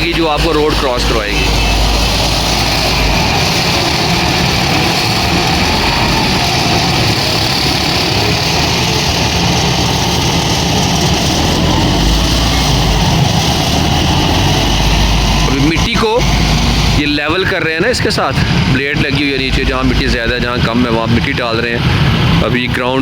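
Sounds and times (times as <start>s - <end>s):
continuous traffic noise: 0.0s - 23.0s
deep engine rumble: 0.0s - 23.0s.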